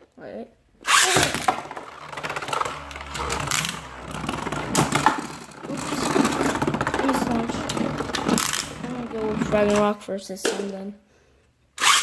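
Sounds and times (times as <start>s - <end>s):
irregular clicks and knocks: 0.9s - 9.9s
plastic spinning tops clattering: 0.9s - 9.9s.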